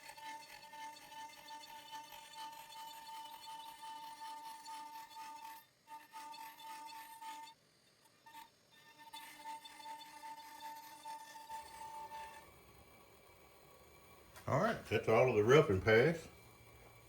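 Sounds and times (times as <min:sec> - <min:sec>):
router spindle whining: 0:08.0 - 0:17.0.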